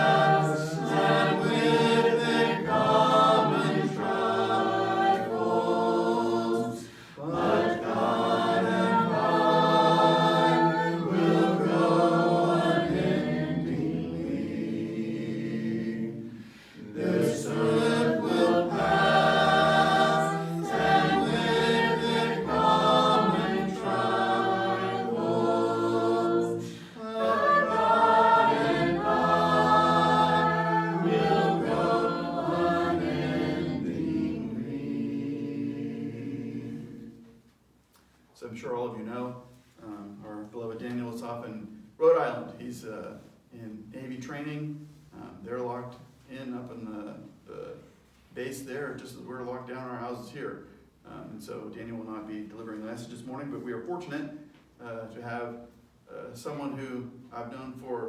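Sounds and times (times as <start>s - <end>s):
congregation singing a hymn: 0.0s - 37.5s
singers breathing: 6.8s - 7.2s, 16.3s - 16.9s, 26.6s - 27.1s.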